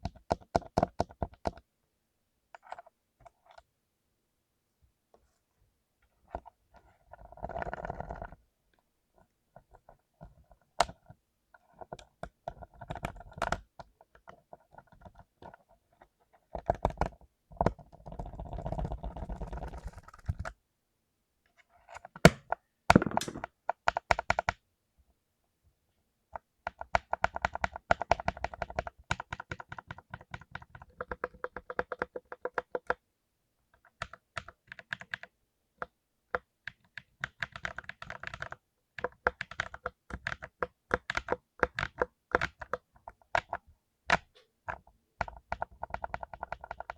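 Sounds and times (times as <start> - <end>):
mechanical keyboard typing: 22.3 - 24.6, 26.7 - 33.0, 33.9 - 35.3, 36.7 - 46.9.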